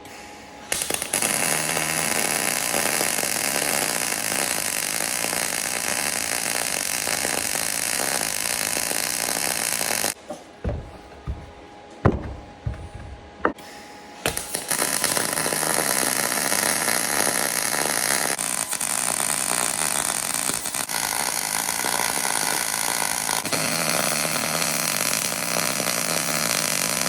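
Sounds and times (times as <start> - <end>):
arc welding noise: 0.0 - 11.4, 14.2 - 27.0
short knocks: 10.3 - 13.6.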